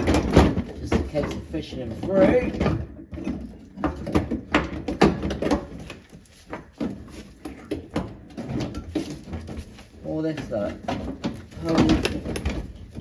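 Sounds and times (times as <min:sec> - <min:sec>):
metal car parts clicking and knocking: 0:00.0 - 0:09.8, 0:10.4 - 0:13.0.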